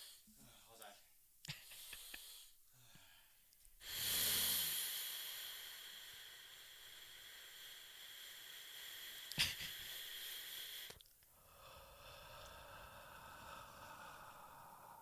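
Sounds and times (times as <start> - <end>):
man breathing and sniffling: 1.5 - 6.2.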